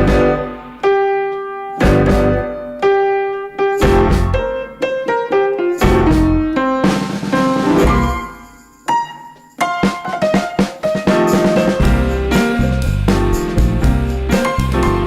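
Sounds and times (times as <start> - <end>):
keyboard chords and runs: 0.0 - 0.8, 11.3 - 15.0.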